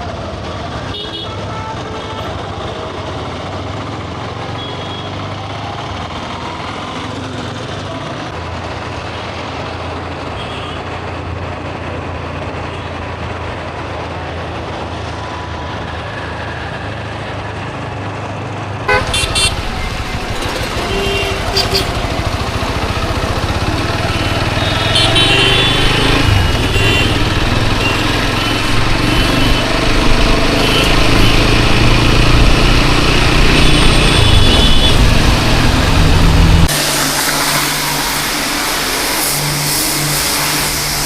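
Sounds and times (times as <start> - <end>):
vehicle engines running: 0.0 - 41.0
car horns honking: 18.9 - 32.0, 33.3 - 36.0.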